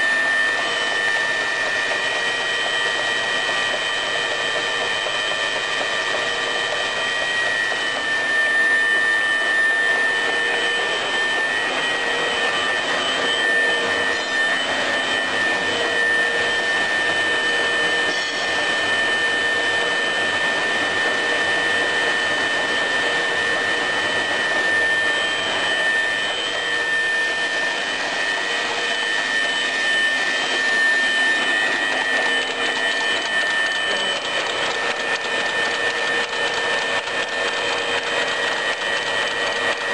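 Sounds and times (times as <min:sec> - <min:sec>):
wire cutting machine whining: 0:00.0 - 0:39.9.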